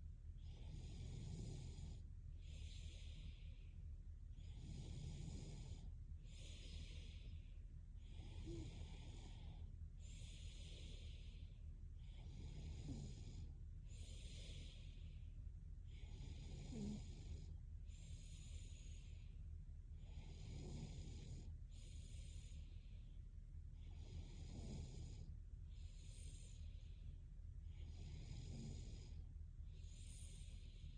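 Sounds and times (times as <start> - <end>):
faint low snore: 0.3 - 30.9
woman breathing heavily: 6.1 - 12.3, 13.8 - 15.4.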